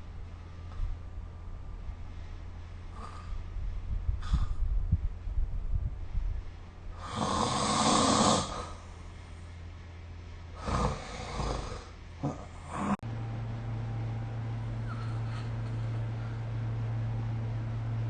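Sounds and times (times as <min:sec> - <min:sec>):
low steady hum: 0:00.0 - 0:18.0
person snoring: 0:07.0 - 0:08.8, 0:10.6 - 0:13.0.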